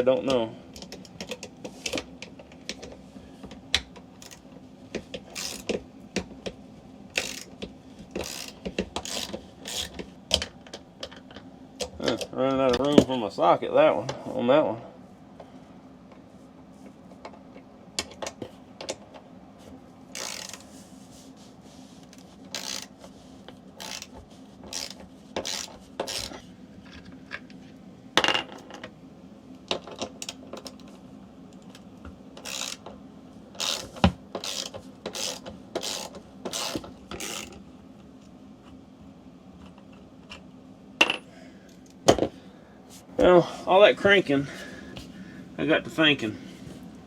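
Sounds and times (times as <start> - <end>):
socket ratchet clicking: 5.3 - 5.8, 7.2 - 7.6, 8.2 - 10.4, 20.2 - 20.6, 22.5 - 22.9, 23.8 - 24.1, 24.7 - 26.4, 32.4 - 32.9, 33.6 - 37.6.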